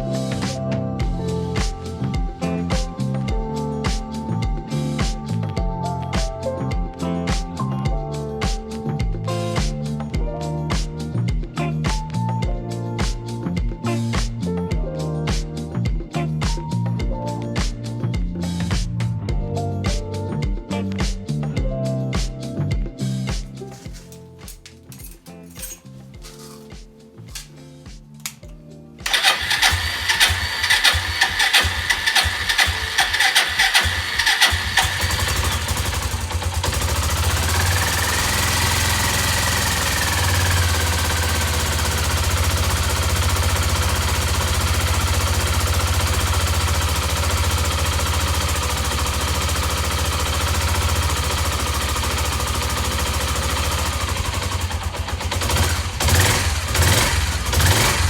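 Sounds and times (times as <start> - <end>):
motorcycle engine starting and idling: 29.0 - 58.0.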